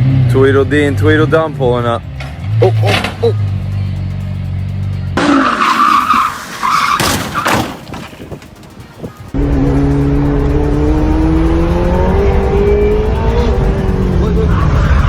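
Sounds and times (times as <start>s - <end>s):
vehicle engine accelerating: 0.0s - 6.8s, 8.2s - 15.0s
car tyres squealing: 1.8s - 3.8s, 4.6s - 8.5s, 12.2s - 15.0s
car crash impacts: 2.2s - 3.2s, 5.2s - 8.6s.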